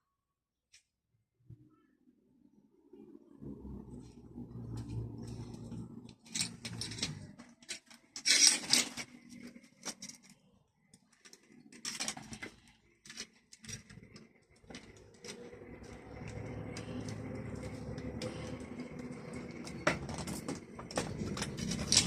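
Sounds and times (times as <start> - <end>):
small tools clicking and rattling: 6.1 - 22.0.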